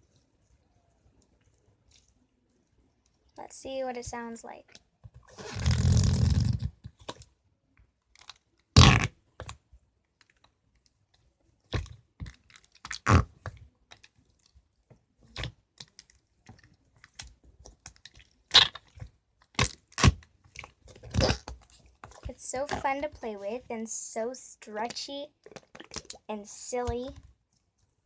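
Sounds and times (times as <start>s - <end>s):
putty squelching: 8.1s - 23.8s, 24.8s - 27.8s.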